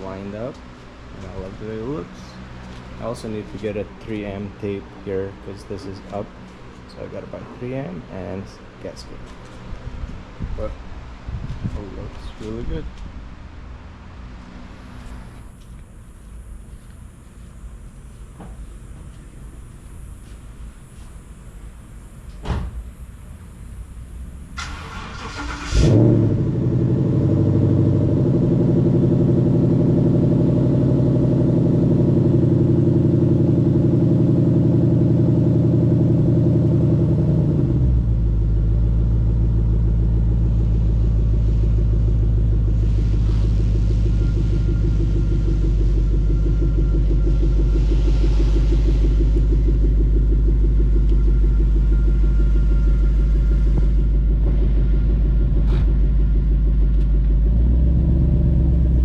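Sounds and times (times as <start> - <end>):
car engine idling: 0.0 - 59.0
car starter cranking: 24.6 - 26.1.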